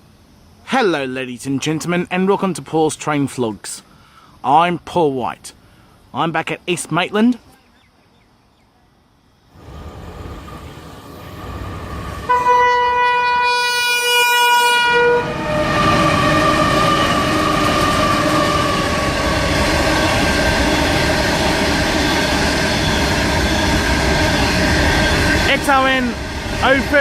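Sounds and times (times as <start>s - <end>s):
train horn: 12.2s - 19.2s
locomotive engine: 15.2s - 27.0s
rolling train wagons: 15.5s - 27.0s.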